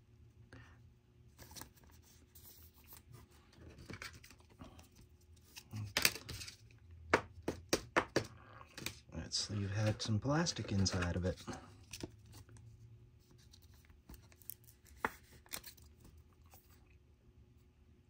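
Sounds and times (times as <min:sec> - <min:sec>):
plastic sleeve rustling: 0:09.4 - 0:12.6.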